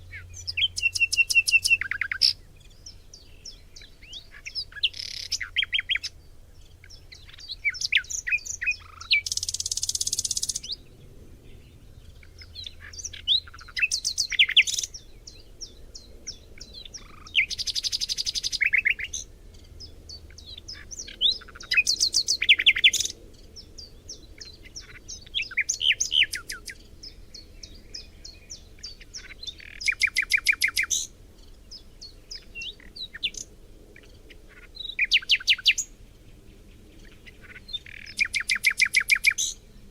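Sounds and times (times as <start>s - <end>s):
songbirds chirping and trilling: 0.0s - 39.9s.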